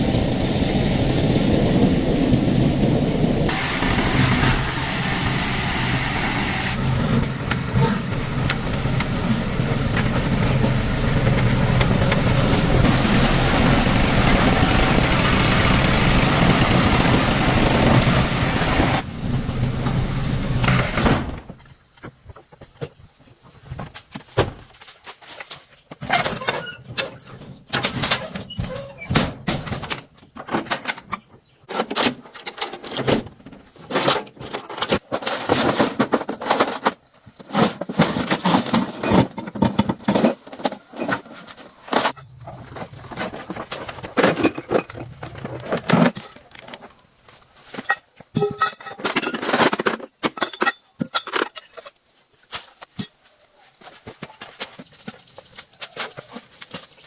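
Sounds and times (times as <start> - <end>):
engine humming: 0.0 - 21.0.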